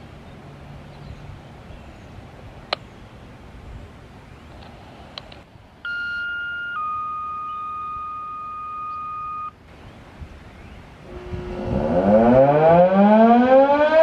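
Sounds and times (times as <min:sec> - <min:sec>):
scanner radio steady beep: 0:05.8 - 0:09.6.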